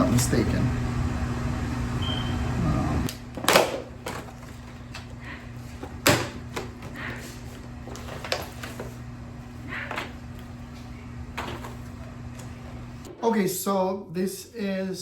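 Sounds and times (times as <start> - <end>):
steady low hum: 0.0 - 15.0
tools and packaging clattering: 3.3 - 9.0, 11.4 - 12.0.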